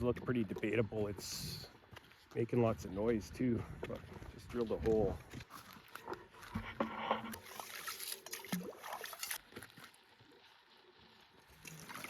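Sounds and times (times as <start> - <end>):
water sloshing and trickling: 5.2 - 12.0.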